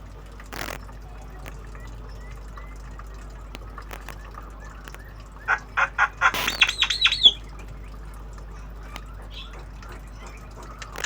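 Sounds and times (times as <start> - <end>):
bird harsh chirps and whistles: 4.6 - 7.4.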